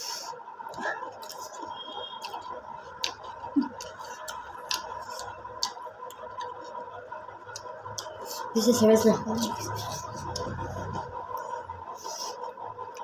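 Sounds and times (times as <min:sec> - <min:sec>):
faint steady hum: 0:00.0 - 0:13.0
person chewing food: 0:00.1 - 0:08.5, 0:09.4 - 0:13.0
mouth clicks and smacks: 0:00.7 - 0:06.8, 0:09.5 - 0:11.5.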